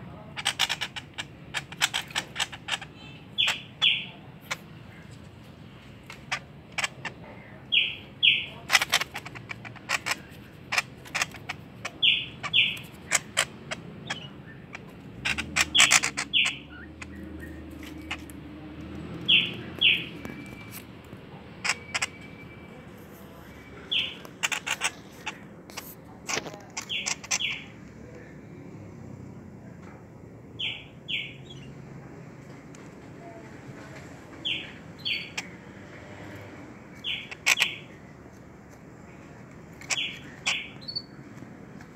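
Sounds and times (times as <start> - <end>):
songbird chirping: 0.0 - 41.9
sharp clicks: 0.4 - 4.6, 23.9 - 28.0.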